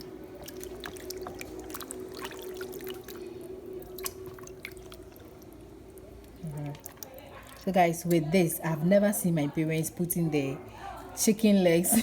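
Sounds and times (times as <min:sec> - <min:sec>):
water splashing in a bowl: 0:00.0 - 0:08.2
faint steady hum: 0:00.0 - 0:12.0.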